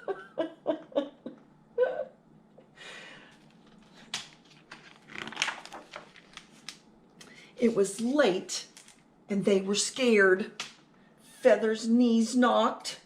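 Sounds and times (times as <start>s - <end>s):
rustling: 3.3s - 6.8s.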